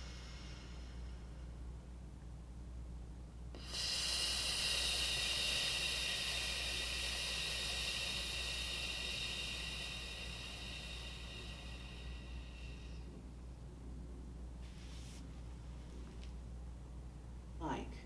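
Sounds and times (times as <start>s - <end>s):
person exhaling with fff hiss: 0.0s - 1.6s, 3.5s - 13.4s.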